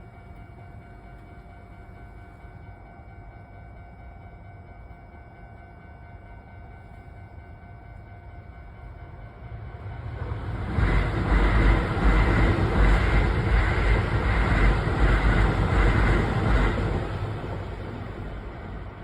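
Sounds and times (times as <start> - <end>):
crossing warning bell: 0.0 - 19.0
train wheels rumbling on rails: 6.0 - 19.0.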